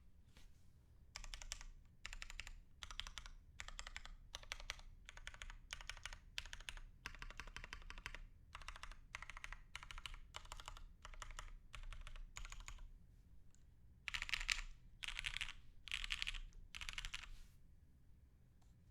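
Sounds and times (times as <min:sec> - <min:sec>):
mechanical keyboard typing: 0:01.2 - 0:12.8, 0:14.1 - 0:17.3.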